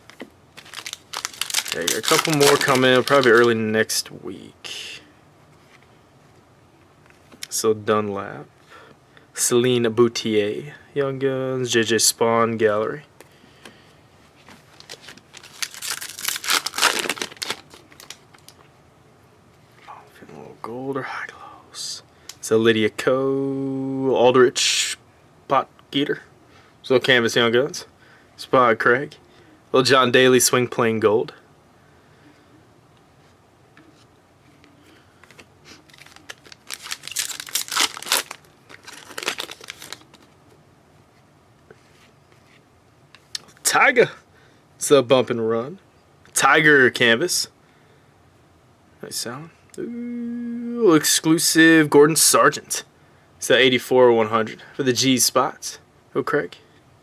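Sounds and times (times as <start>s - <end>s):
card pack wrapper tearing: 0.6s - 3.6s, 14.8s - 18.6s, 35.3s - 40.3s.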